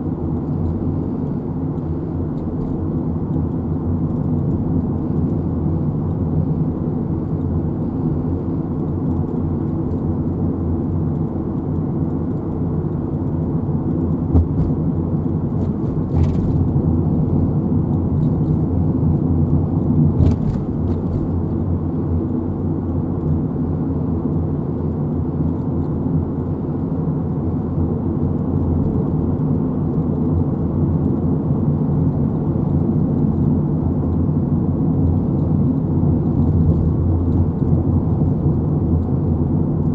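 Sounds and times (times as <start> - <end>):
car engine and road rumble: 0.0 - 39.9.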